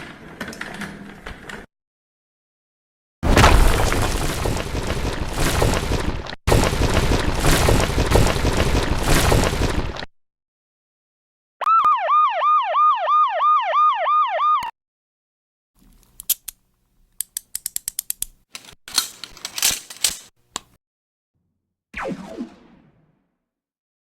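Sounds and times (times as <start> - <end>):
yelping siren: 11.6 - 14.8
sharp clicks and taps: 17.2 - 19.1.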